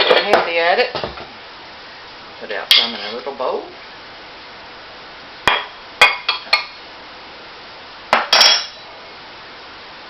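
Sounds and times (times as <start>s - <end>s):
metal utensil clinking on dishes: 2.7s - 3.2s, 8.3s - 8.8s.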